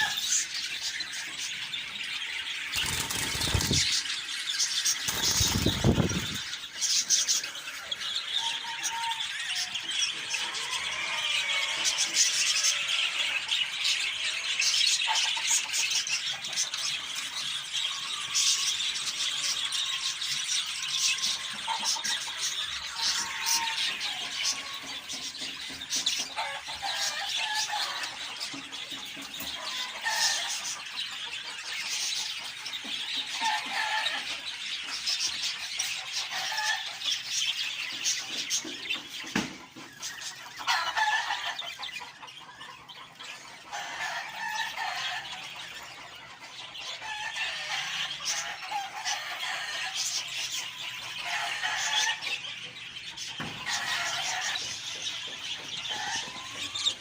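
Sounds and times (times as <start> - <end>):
budgerigars chattering and chirping: 0.0 - 57.0
loud squeaky bird calls: 40.0 - 57.0.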